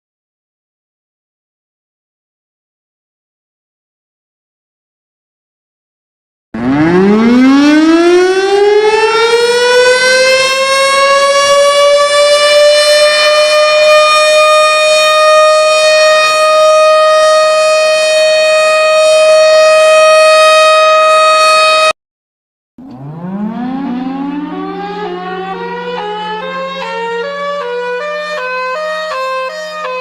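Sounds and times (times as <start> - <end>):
civil defense siren winding up: 6.6 - 22.0, 22.8 - 30.0.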